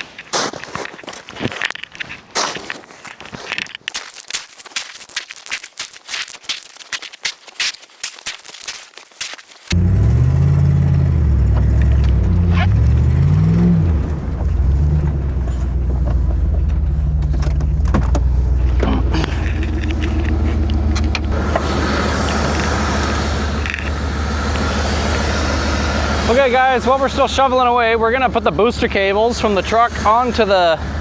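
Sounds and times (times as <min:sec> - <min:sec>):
skidder engine pushing snow: 0:08.0 - 0:31.0.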